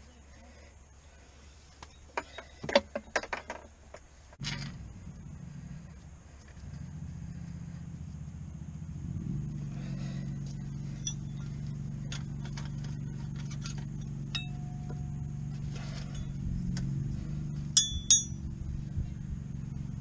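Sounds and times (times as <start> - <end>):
engine idling hum: 3.9 - 20.0
light metallic clinks: 10.6 - 17.1, 17.7 - 18.5.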